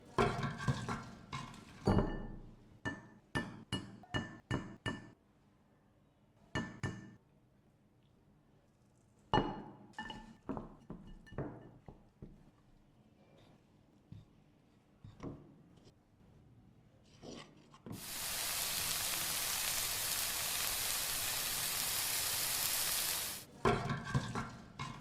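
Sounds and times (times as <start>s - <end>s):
utensil tapping a dish: 0.2s - 1.9s, 23.6s - 25.0s.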